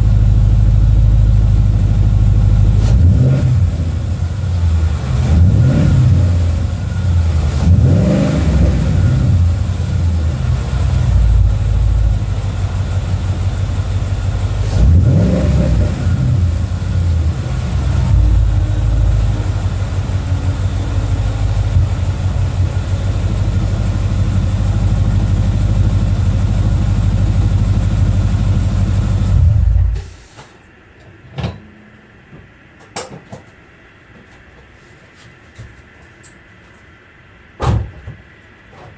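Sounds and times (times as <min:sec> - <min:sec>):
car engine revving and idling: 0:00.0 - 0:30.1.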